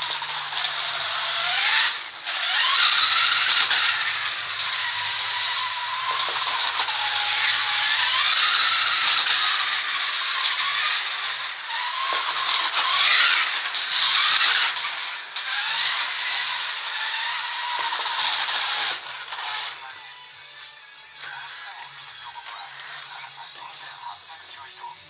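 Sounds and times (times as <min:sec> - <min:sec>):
rattling scraping hiss: 0:00.0 - 0:09.8
electric rc car motor whine: 0:00.0 - 0:24.7.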